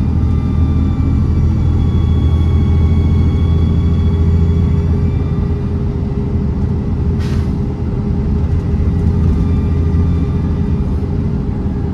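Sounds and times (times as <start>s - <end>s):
bus diesel engine running: 0.0s - 11.9s
faint high whistling: 0.3s - 5.8s.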